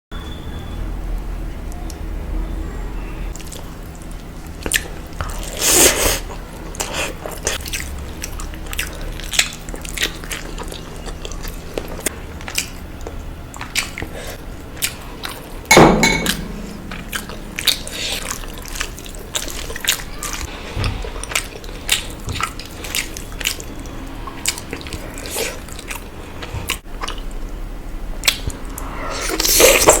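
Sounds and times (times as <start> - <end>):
person chewing food: 3.3 - 15.6, 17.0 - 27.5.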